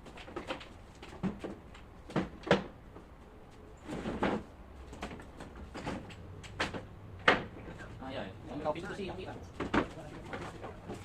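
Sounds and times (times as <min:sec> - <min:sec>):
things being handled and set down: 0:03.8 - 0:07.6.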